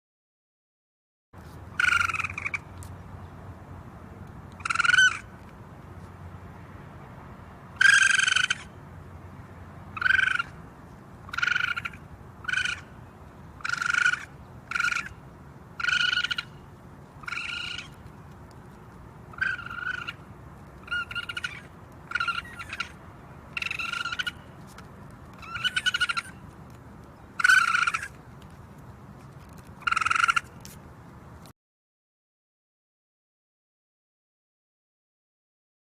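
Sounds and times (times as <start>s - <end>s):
raccoon squealing calls: 1.7s - 2.7s, 4.6s - 5.3s, 7.8s - 8.8s, 10.0s - 10.6s, 11.3s - 12.9s, 13.6s - 15.2s, 15.8s - 16.6s, 17.2s - 18.0s, 19.3s - 24.5s, 25.3s - 26.5s, 27.2s - 28.2s, 29.7s - 30.8s.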